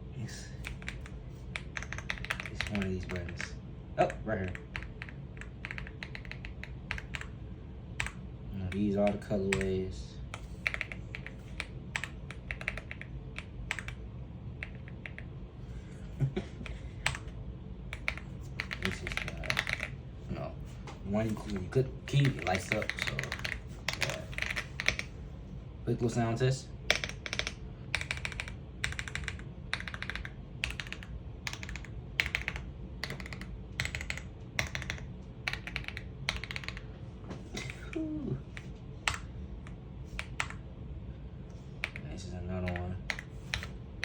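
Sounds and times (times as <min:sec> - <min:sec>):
mechanical keyboard keys clicking: 0:00.6 - 0:03.5, 0:04.1 - 0:07.3, 0:10.6 - 0:14.0, 0:17.9 - 0:19.9, 0:21.4 - 0:25.1, 0:26.9 - 0:36.8, 0:40.2 - 0:40.6.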